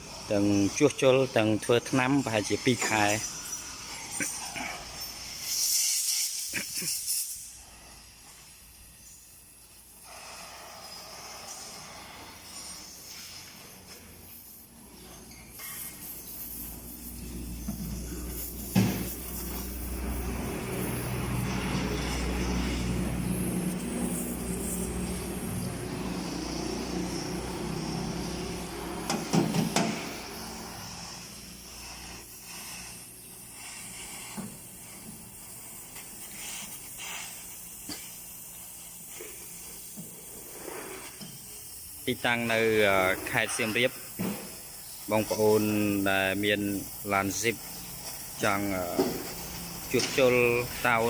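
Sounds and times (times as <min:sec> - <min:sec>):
motor humming: 0:16.6 - 0:32.2.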